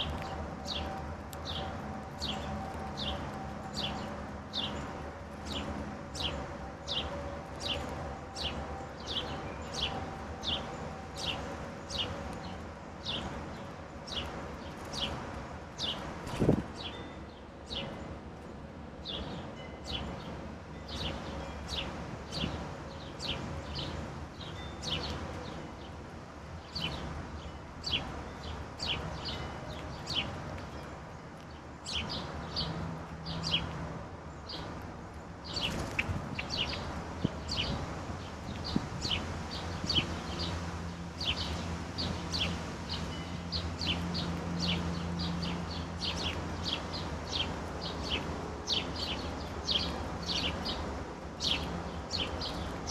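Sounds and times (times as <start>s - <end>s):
songbirds calling: 26.6s - 52.9s.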